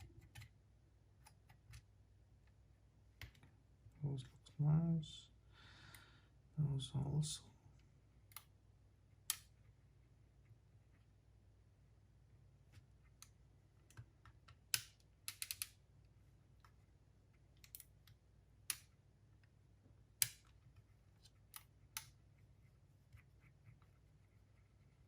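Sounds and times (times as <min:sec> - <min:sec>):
small tools clicking and tapping: 0:13.9 - 0:15.8.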